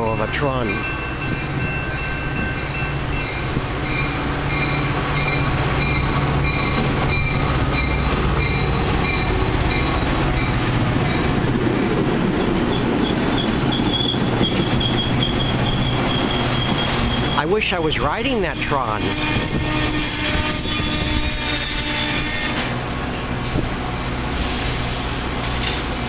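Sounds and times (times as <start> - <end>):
train wheels rumbling on rail: 0.0 - 26.0
high wheel squealing: 12.4 - 17.6, 18.4 - 22.6.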